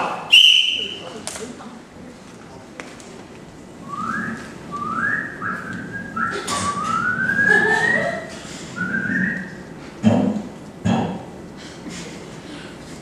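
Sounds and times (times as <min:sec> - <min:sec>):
person whistling rising notes: 0:03.8 - 0:09.6.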